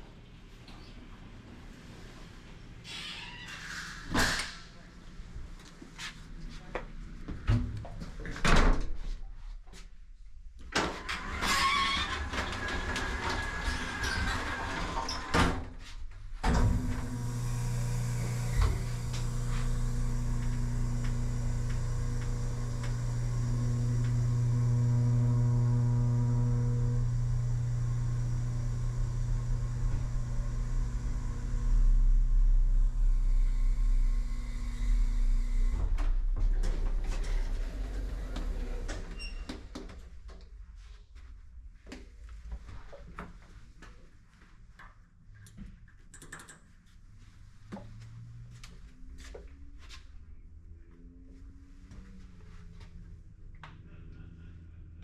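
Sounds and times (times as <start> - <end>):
elevator doors sliding: 11.0 - 15.6, 16.5 - 39.6
elevator running hum: 16.5 - 39.4.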